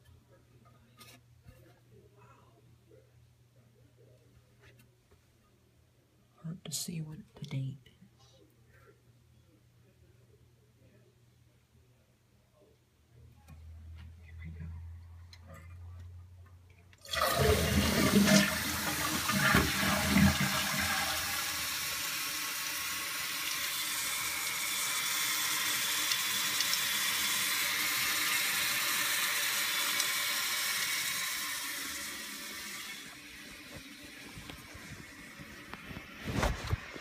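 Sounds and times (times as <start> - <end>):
toilet flushing: 17.0 - 36.9
toilet tank refilling hiss: 17.0 - 36.9.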